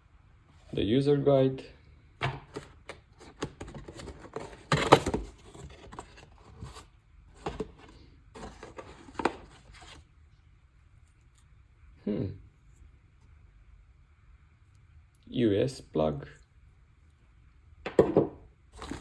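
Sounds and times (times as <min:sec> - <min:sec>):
paper and cardboard rustling: 0:02.2 - 0:10.1, 0:18.8 - 0:19.0.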